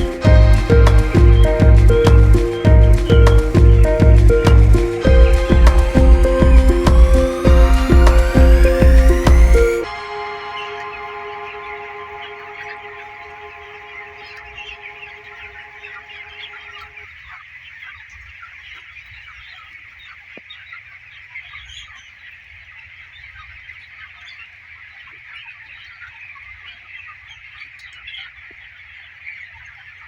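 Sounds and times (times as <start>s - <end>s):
low rumble: 0.0s - 15.8s
steady hum: 0.0s - 17.0s
chickens chattering: 0.0s - 30.0s.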